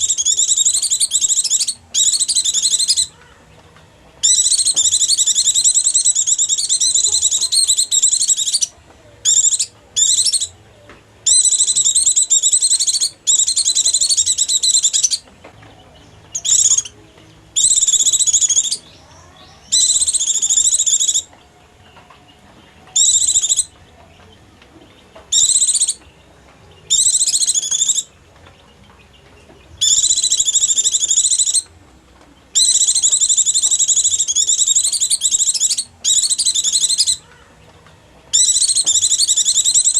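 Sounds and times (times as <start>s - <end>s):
bird twittering chatter: 0.0s - 3.4s, 4.2s - 10.5s, 11.2s - 15.3s, 16.2s - 17.0s, 17.6s - 21.3s, 22.9s - 23.8s, 25.3s - 26.0s, 26.9s - 28.1s, 29.8s - 31.7s, 32.5s - 37.5s, 38.3s - 39.9s.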